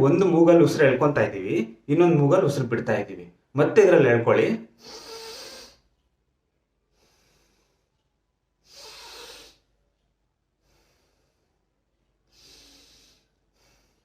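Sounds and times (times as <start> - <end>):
man breathing through nose: 4.8 - 5.8, 6.9 - 7.9, 8.6 - 9.7, 10.6 - 11.6, 12.2 - 14.0.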